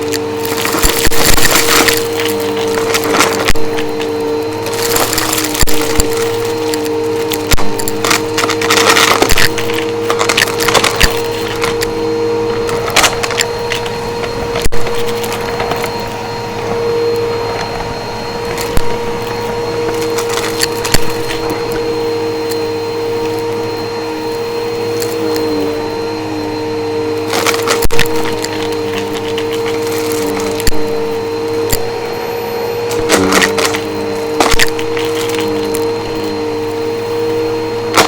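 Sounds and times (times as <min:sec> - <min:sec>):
debris crackling through vacuum: 0:00.0 - 0:11.8
vacuum cleaner motor whine: 0:00.0 - 0:38.0.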